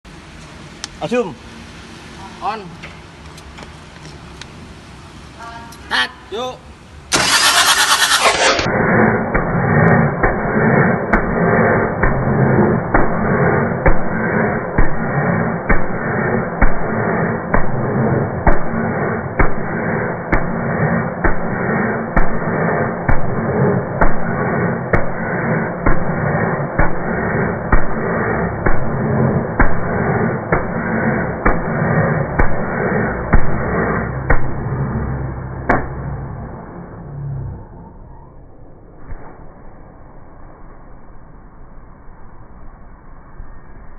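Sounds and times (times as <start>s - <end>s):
diesel engine running: 6.8s - 37.8s.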